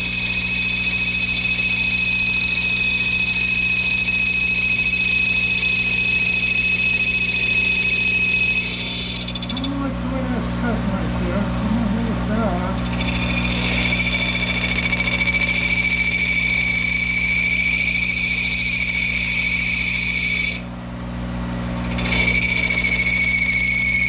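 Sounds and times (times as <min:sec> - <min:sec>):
lathe tool screeching on steel: 0:00.0 - 0:09.9, 0:12.1 - 0:20.7, 0:21.7 - 0:24.0
lathe humming: 0:00.0 - 0:24.0.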